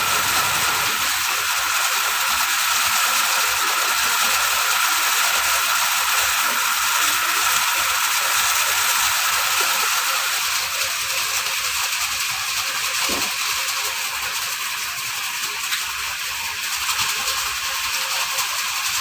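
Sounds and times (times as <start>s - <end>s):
tape spooling hiss: 0.0s - 14.1s
winding machine rattling: 0.0s - 19.0s.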